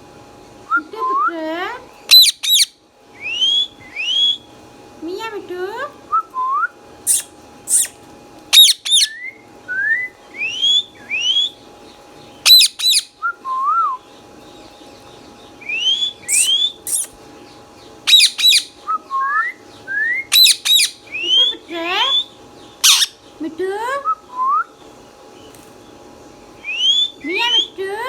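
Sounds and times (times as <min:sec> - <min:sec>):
parakeet shrieking: 0:02.1 - 0:02.8, 0:07.1 - 0:09.2, 0:12.4 - 0:13.1, 0:15.9 - 0:17.2, 0:18.1 - 0:18.8, 0:20.3 - 0:21.4, 0:22.1 - 0:23.2
parakeet whistling: 0:02.1 - 0:04.5, 0:07.1 - 0:11.6, 0:12.4 - 0:14.1, 0:15.6 - 0:17.2, 0:18.1 - 0:23.2, 0:26.6 - 0:27.8.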